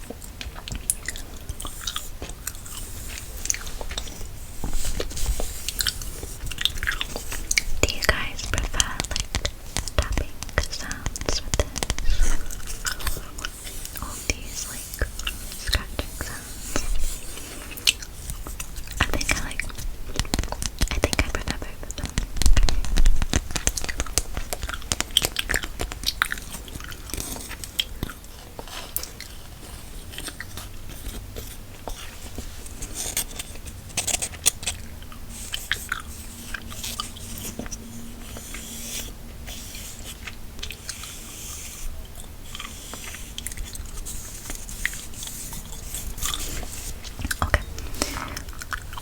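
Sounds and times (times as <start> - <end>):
gum chewing wet clicks: 17.7 - 28.3, 44.6 - 49.0.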